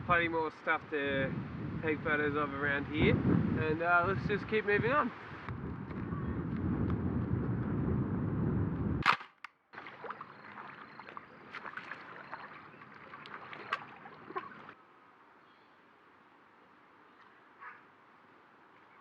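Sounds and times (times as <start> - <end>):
wind rumbling on microphone: 0.0 - 9.1
sharp click: 9.0 - 9.6.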